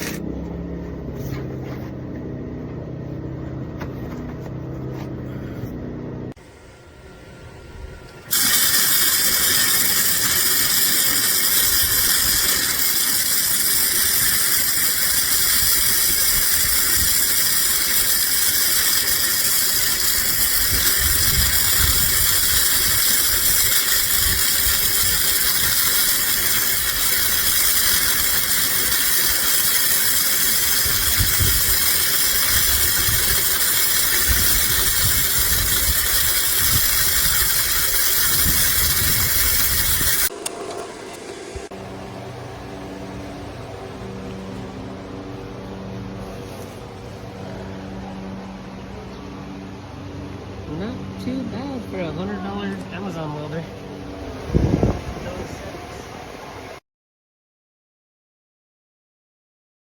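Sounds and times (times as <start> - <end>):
welding arc hiss: 8.2 - 40.4.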